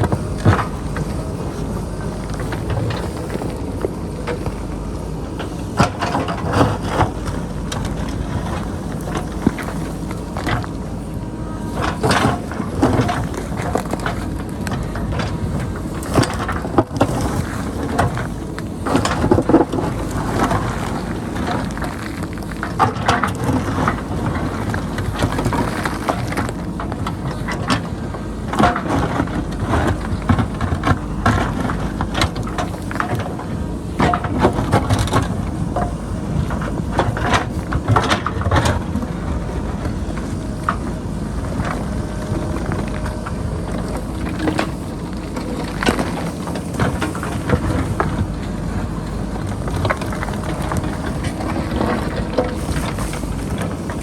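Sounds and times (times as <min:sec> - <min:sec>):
diesel engine under load: 0:00.0 - 0:54.0.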